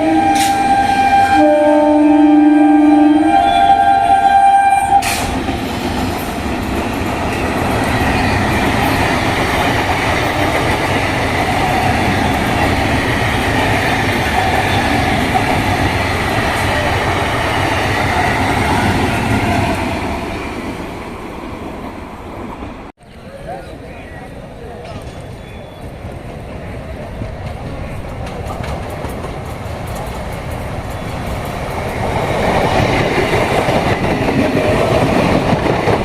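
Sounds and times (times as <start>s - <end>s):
train horn blast: 0.0s - 5.4s
train wheels rumbling on rails: 0.0s - 22.9s, 24.5s - 36.0s.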